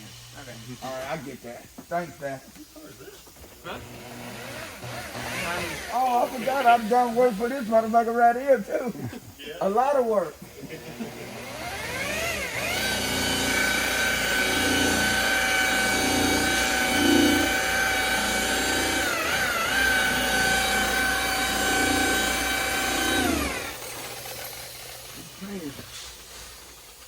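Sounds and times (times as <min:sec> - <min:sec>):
electric car polisher whining: 0:03.7 - 0:07.4, 0:10.6 - 0:25.9.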